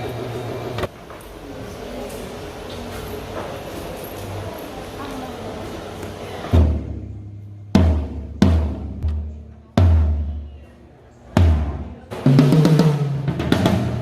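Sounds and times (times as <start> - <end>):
low drum thuds: 6.5 - 10.4.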